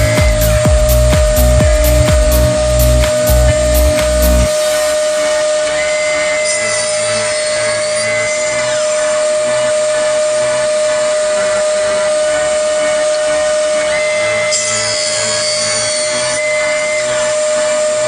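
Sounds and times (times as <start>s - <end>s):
electric table saw whining: 0.0s - 18.0s.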